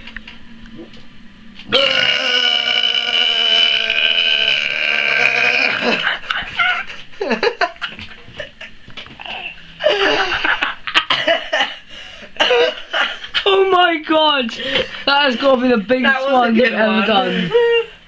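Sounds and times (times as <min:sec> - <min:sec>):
long burp: 0:01.7 - 0:06.1.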